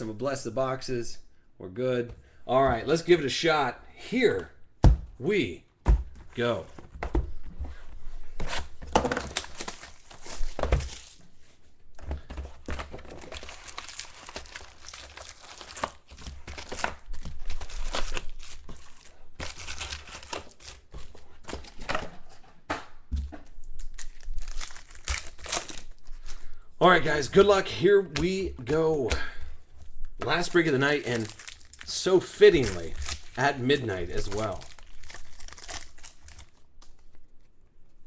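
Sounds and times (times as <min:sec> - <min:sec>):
plastic wrap tearing and crinkling: 0:08.6 - 0:11.2, 0:13.0 - 0:21.0, 0:23.8 - 0:26.2, 0:30.3 - 0:37.4.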